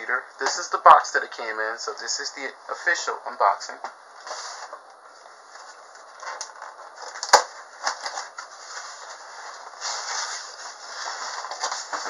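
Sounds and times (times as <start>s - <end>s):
packaging crinkling and rustling: 5.6s - 12.0s.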